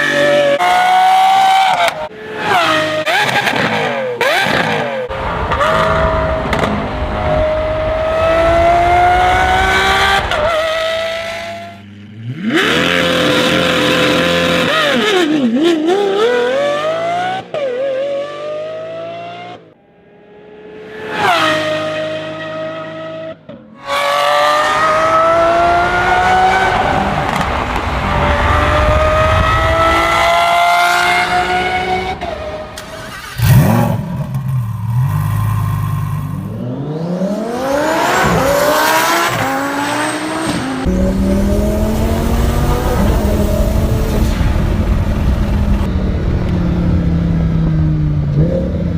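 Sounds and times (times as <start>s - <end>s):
car engine accelerating: 0.0s - 48.9s.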